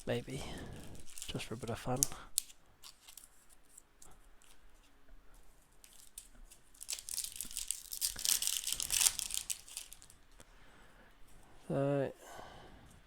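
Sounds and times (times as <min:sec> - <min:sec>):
plastic wrapper tearing and crinkling: 0:00.6 - 0:04.6, 0:05.8 - 0:10.4.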